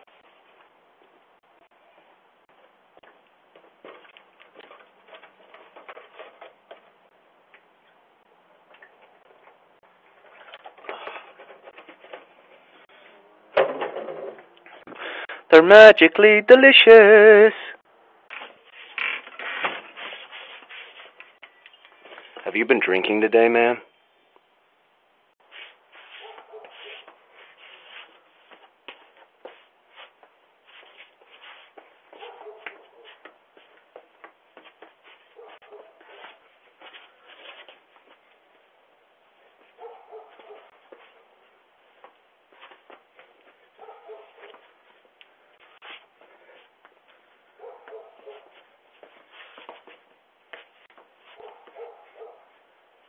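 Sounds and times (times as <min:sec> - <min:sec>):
shuffling and rustling: 0:00.0 - 0:08.0, 0:08.6 - 0:13.2, 0:18.2 - 0:22.5, 0:25.4 - 0:38.7, 0:39.3 - 0:53.0
quick footsteps: 0:02.5 - 0:07.7, 0:25.5 - 0:38.4, 0:41.9 - 0:52.0
taps and scuffs: 0:02.6 - 0:07.7, 0:25.4 - 0:38.4, 0:39.6 - 0:41.2, 0:41.9 - 0:52.3.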